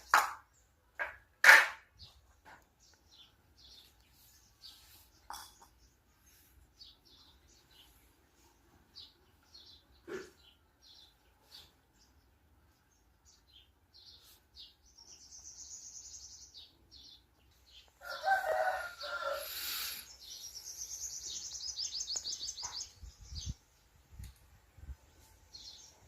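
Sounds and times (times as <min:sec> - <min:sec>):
small birds chirping and trilling: 0:01.9 - 0:26.0
rooster crowing: 0:18.0 - 0:19.7.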